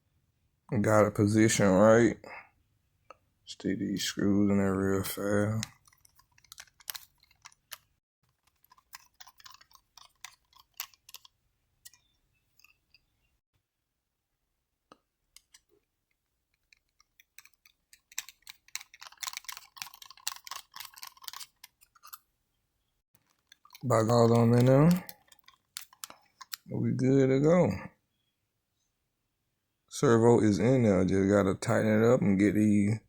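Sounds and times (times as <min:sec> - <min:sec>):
metal scraping on plastic: 0:05.0 - 0:13.1, 0:16.5 - 0:22.2, 0:23.2 - 0:26.7
screwdriver clicking: 0:05.6 - 0:07.8, 0:16.7 - 0:22.2, 0:25.0 - 0:26.7.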